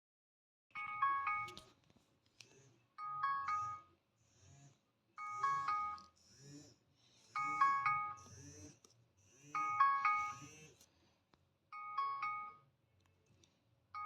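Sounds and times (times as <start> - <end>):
smartphone alarm tone: 3.0 - 3.9, 5.2 - 6.0, 9.6 - 10.5, 11.8 - 12.6.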